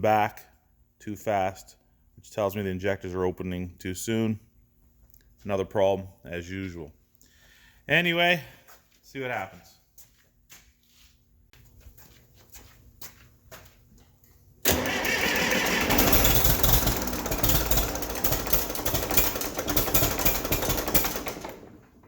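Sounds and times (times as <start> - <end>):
diesel tractor engine cranking: 14.6 - 22.0.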